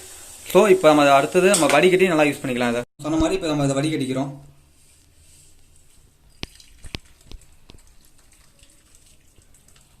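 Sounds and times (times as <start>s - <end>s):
liquid trickling and dripping: 6.3s - 10.0s.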